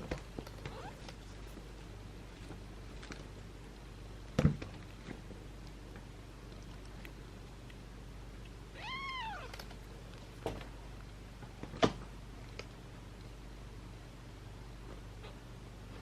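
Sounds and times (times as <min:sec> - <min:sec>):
kitten meowing: 0:08.8 - 0:09.6.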